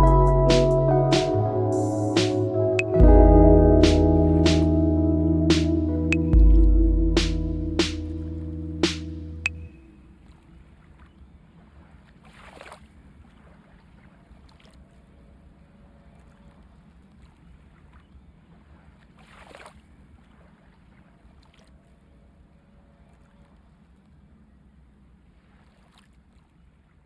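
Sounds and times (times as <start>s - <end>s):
wave breaking: 0.0s - 10.0s.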